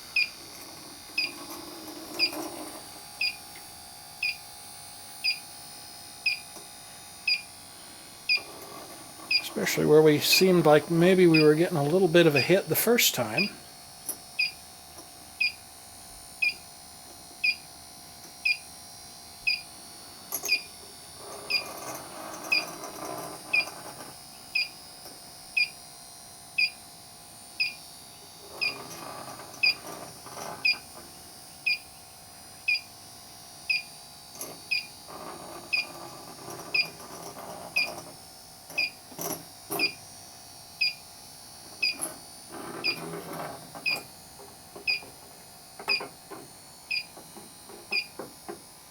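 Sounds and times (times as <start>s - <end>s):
leak detector beeping: 0.1s - 0.4s, 1.2s - 1.5s, 2.2s - 2.4s, 3.2s - 3.6s, 4.2s - 4.5s, 5.2s - 5.6s, 6.2s - 6.6s, 7.2s - 7.5s, 8.3s - 8.5s, 9.3s - 13.6s, 14.4s - 14.6s, 15.4s - 15.6s, 16.4s - 16.7s, 17.4s - 17.7s, 18.4s - 18.7s, 19.5s - 19.7s, 20.5s - 20.8s, 22.5s - 22.7s, 23.5s - 23.8s, 24.5s - 24.8s, 25.6s - 25.8s, 26.6s - 26.8s, 27.6s - 27.8s, 28.6s - 28.9s, 29.6s - 29.8s, 30.6s - 30.8s, 31.6s - 31.9s, 32.7s - 32.9s, 33.7s - 34.0s, 34.7s - 35.0s, 35.7s - 36.0s, 36.7s - 37.0s, 37.8s - 38.0s, 38.8s - 39.0s, 39.8s - 40.0s, 40.8s - 41.0s, 41.8s - 42.1s, 42.8s - 43.1s, 43.8s - 44.1s, 44.9s - 45.1s, 45.9s - 46.1s, 46.9s - 47.1s, 47.9s - 48.2s.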